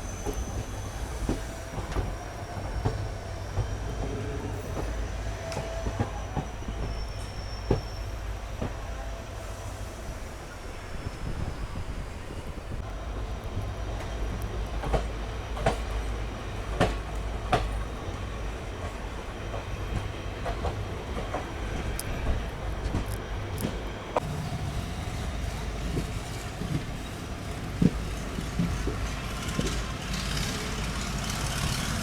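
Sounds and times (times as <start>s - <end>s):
passenger train rumbling: 0.0s - 32.0s
wheels clacking over rail joints: 12.8s - 32.0s.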